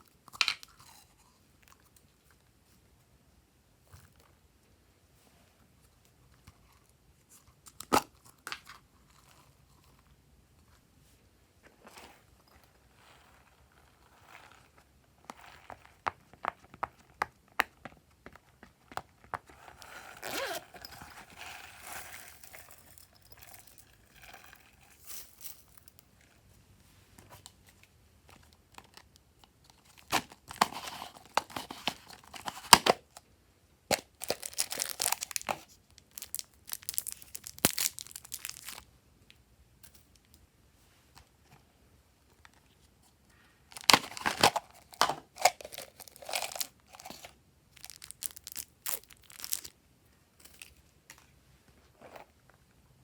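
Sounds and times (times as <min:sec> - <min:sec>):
slime crackling and popping: 0:34.2 - 0:38.8, 0:47.8 - 0:49.7.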